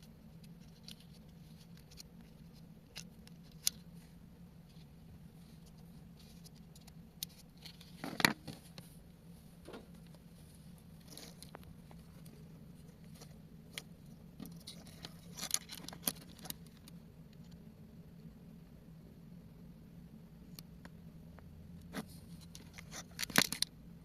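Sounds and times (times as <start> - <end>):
steady low hum: 0.0 - 24.0
small plastic parts clicking: 0.4 - 3.8, 13.2 - 17.0, 22.4 - 23.7.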